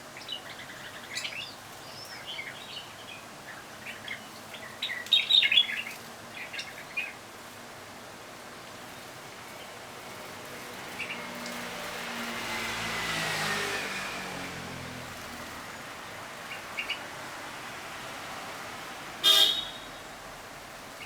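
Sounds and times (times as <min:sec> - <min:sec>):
vehicle passing by: 0:09.2 - 0:20.8
short vehicle horn honk: 0:19.2 - 0:20.0.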